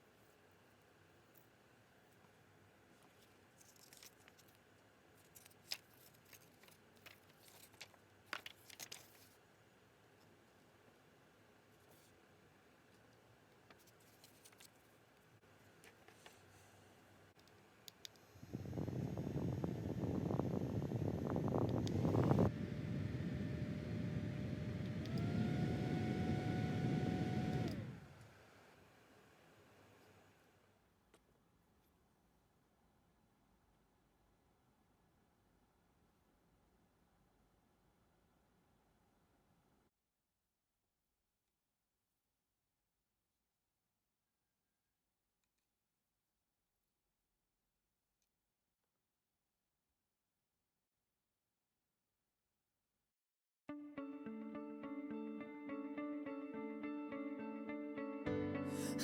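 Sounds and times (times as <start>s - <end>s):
handheld fan whirring: 18.3s - 28.5s.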